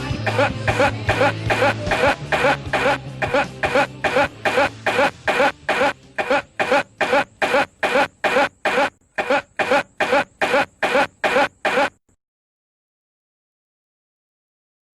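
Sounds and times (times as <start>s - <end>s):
man coughing: 0.3s - 12.0s.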